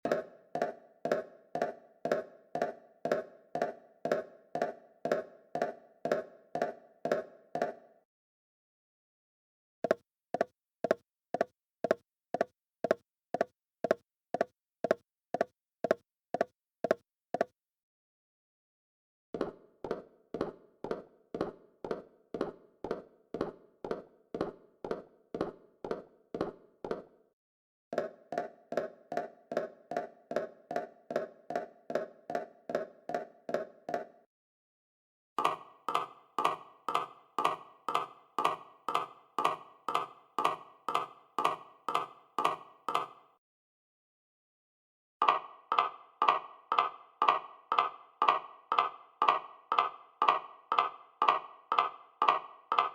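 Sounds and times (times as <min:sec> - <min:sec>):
hard-soled footsteps on hard floor: 0:09.9 - 0:17.5, 0:19.4 - 0:27.1.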